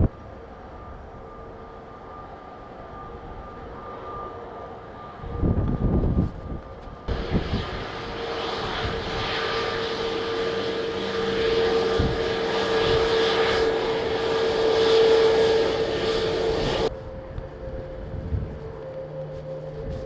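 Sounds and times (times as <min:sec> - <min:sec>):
jet airliner engines roaring: 0:00.0 - 0:20.0
wind buffeting microphone: 0:05.0 - 0:19.0.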